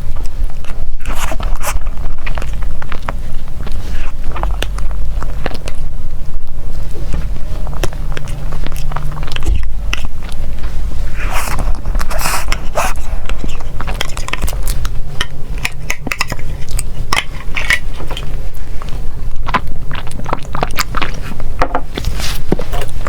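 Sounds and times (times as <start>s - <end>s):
biting and chewing: 0.0s - 23.0s.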